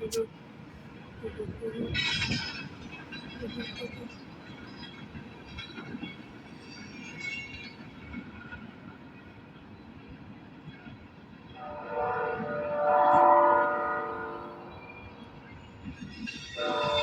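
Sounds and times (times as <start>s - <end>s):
train rumbling: 0.0s - 17.0s
locomotive air horn: 11.6s - 14.7s, 16.6s - 17.0s.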